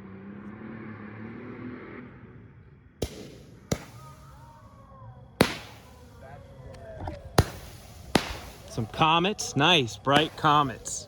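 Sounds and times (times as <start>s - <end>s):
firework launch bangs: 3.0s - 4.8s, 5.4s - 11.0s.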